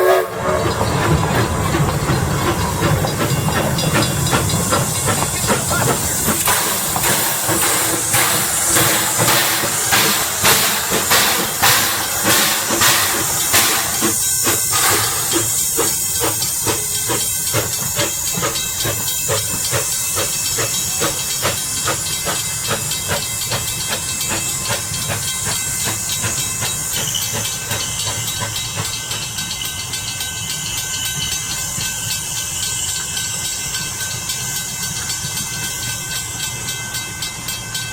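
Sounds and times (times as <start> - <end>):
steam locomotive hissing and chugging: 0.0 - 37.9.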